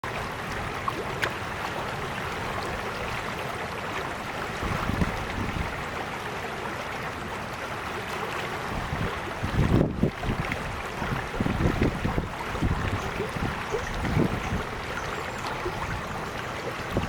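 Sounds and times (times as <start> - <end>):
creek water babbling over stones: 0.0 - 17.0.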